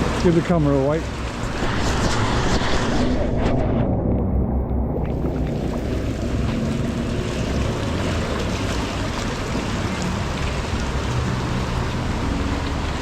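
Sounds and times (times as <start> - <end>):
heavy rain on flood water: 0.0 - 1.8, 5.1 - 13.0
low rumble: 1.1 - 7.8.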